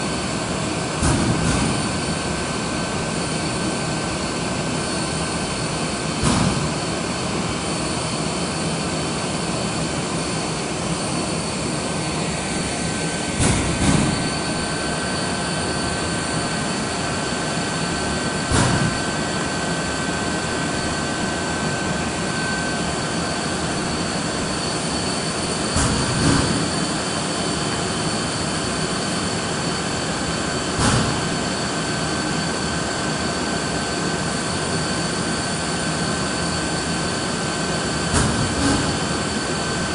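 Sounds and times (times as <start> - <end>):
drilling machine whirring: 10.5 - 39.9
machine clunks: 13.4 - 14.4, 18.5 - 19.0.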